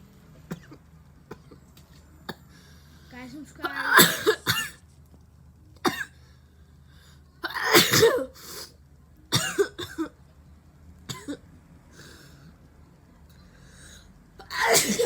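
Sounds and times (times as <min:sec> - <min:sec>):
woman sneezing: 0:14.5 - 0:15.0.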